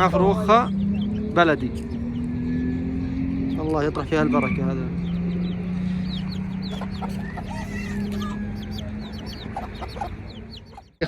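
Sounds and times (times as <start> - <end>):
chicks peeping: 0.0 - 11.0
hens clucking: 4.1 - 11.0.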